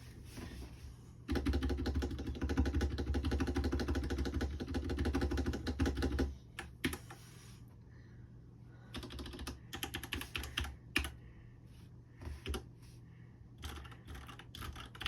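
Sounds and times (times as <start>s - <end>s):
mechanical keyboard typing: 1.3s - 7.2s, 8.9s - 11.2s, 13.6s - 15.0s.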